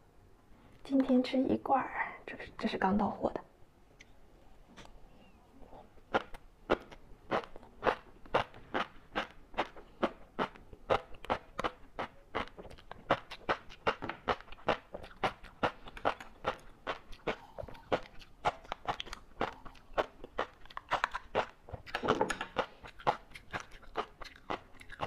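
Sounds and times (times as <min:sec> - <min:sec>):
fish roe crunching when chewed: 0:06.1 - 0:25.0.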